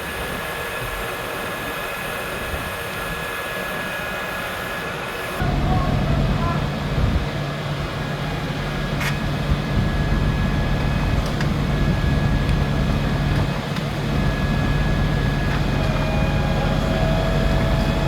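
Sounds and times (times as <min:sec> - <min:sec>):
large engine idling: 0:00.0 - 0:18.0.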